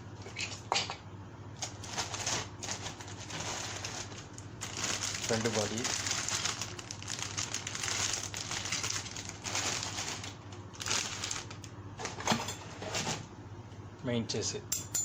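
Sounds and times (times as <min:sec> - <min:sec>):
plastic packaging crinkling: 0:01.6 - 0:11.8.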